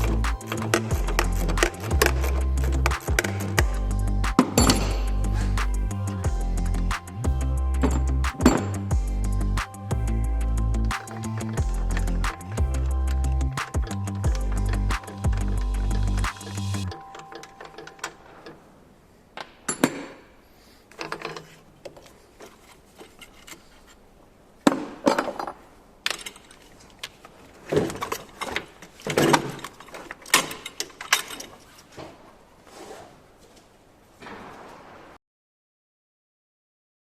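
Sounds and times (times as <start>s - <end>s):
tools knocking and clinking: 19.4s - 20.2s, 27.7s - 31.6s
handling noise: 24.6s - 35.2s.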